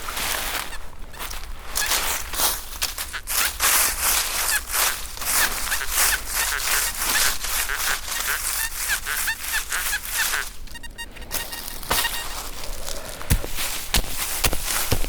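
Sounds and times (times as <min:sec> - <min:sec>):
footsteps in dry leaves: 0:00.0 - 0:15.0
pulsing electronic tone: 0:05.7 - 0:12.4
short high chirps: 0:07.7 - 0:12.4.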